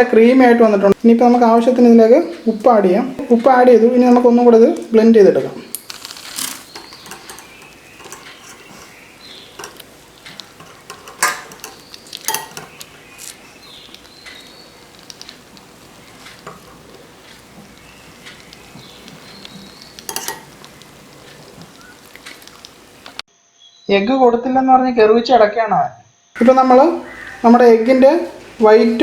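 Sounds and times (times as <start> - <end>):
beater stirring eggs in bowl: 5.6 - 23.2
beater clinking against bowl: 6.4 - 12.8, 20.0 - 20.6.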